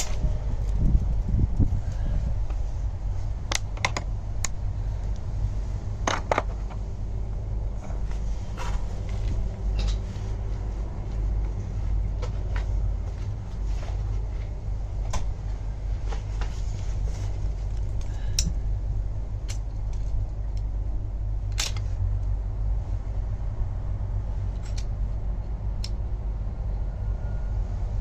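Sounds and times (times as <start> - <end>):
steady low rumble: 0.0 - 28.0
small parts and tools clicking: 17.7 - 18.6, 19.4 - 20.7, 24.5 - 26.0.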